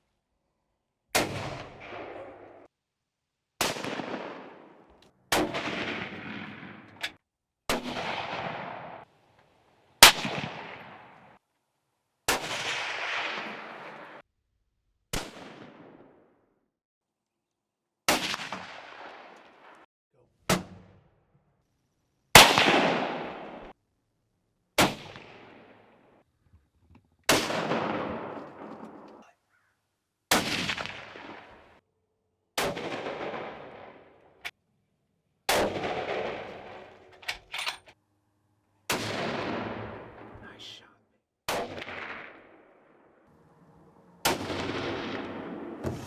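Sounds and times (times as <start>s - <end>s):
rifle shots with echo: 1.2s - 2.7s, 3.6s - 9.1s, 10.0s - 11.4s, 12.3s - 14.2s, 15.2s - 16.3s, 18.1s - 19.8s, 22.4s - 23.7s, 27.3s - 29.2s, 30.3s - 31.8s, 32.6s - 34.2s, 35.5s - 37.1s, 38.9s - 40.5s, 41.5s - 42.9s, 44.2s - 45.8s.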